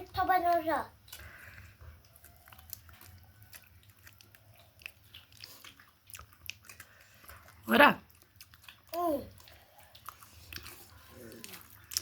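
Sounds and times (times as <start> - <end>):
person chewing: 0.9 - 12.0.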